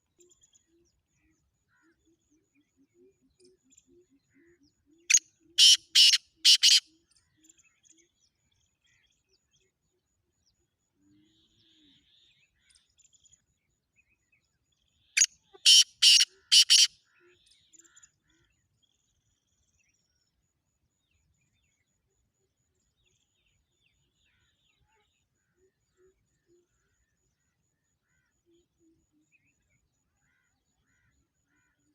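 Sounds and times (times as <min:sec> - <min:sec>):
bird harsh grating call: 0:05.6 - 0:06.8, 0:15.6 - 0:16.9.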